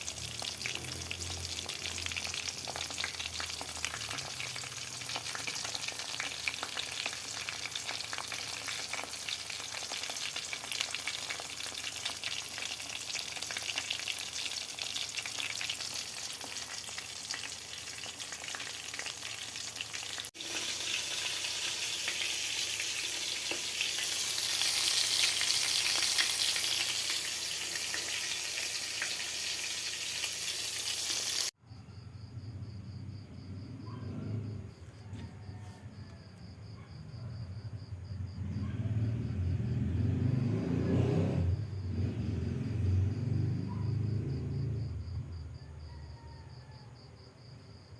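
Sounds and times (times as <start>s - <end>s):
squid frying in hot oil: 0.0s - 31.5s.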